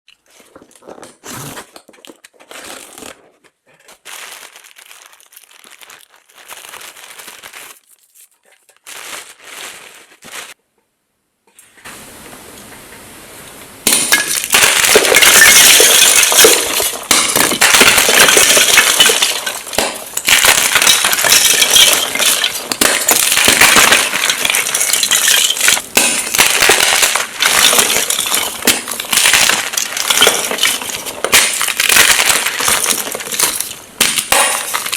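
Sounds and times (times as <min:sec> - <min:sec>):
chalk blocks crunching: 0:00.3 - 0:10.6
soft handling sounds: 0:02.0 - 0:10.6.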